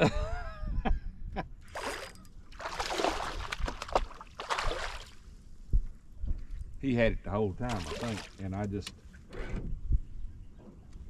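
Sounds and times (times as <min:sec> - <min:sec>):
water splashing and sloshing: 0:01.6 - 0:05.5, 0:07.6 - 0:09.3.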